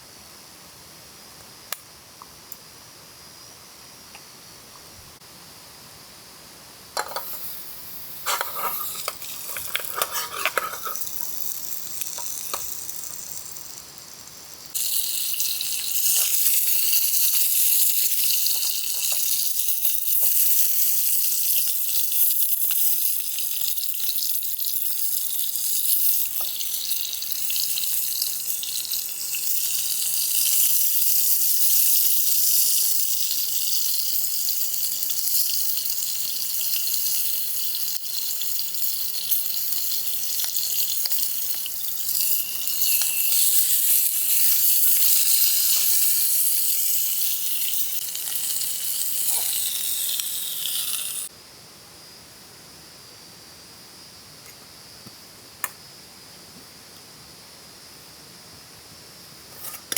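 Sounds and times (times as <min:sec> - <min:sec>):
cookware clinking and knocking: 0:07.0 - 0:07.4, 0:08.3 - 0:11.0
food sizzling in hot pan: 0:07.0 - 0:51.3.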